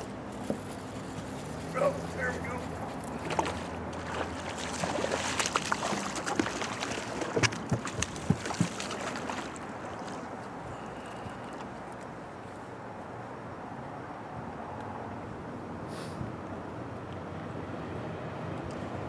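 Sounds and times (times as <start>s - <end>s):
wind: 0.0s - 19.0s
water sloshing: 0.4s - 12.1s.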